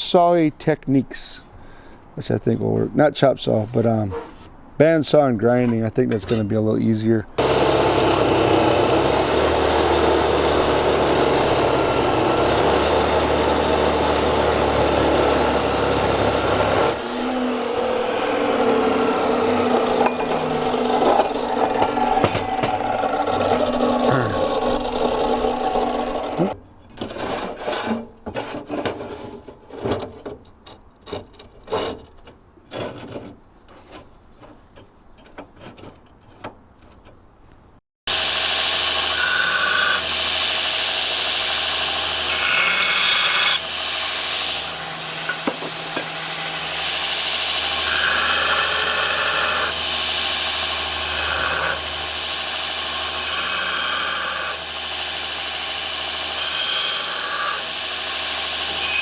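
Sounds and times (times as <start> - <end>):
scraping on steel: 3.5 - 7.5, 15.9 - 37.3
power tool shaping steel: 7.4 - 26.6, 38.1 - 59.0.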